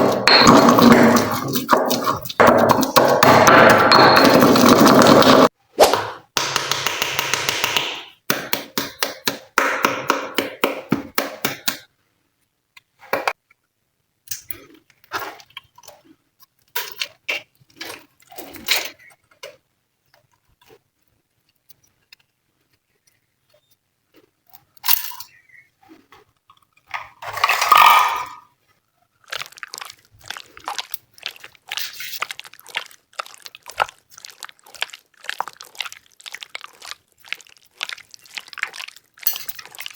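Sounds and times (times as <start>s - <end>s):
slime clicking and squelching: 0.0s - 5.4s, 29.2s - 39.9s
loud slime squish: 0.0s - 6.2s, 29.2s - 39.9s.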